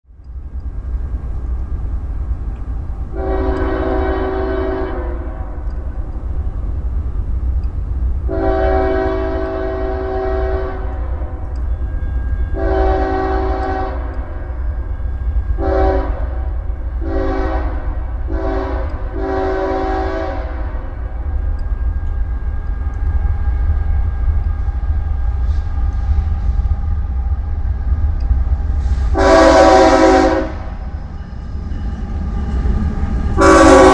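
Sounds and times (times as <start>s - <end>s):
low train rumble: 0.0s - 33.9s
locomotive air horn blasts: 3.1s - 5.9s, 8.3s - 14.8s, 15.4s - 21.2s, 29.1s - 30.8s, 33.4s - 33.9s.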